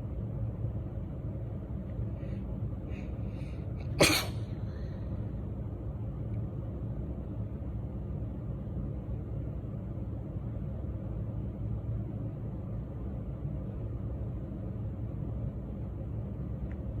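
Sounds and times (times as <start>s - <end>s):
steady low rumble: 0.0s - 17.0s
woman sneezing: 3.9s - 4.5s.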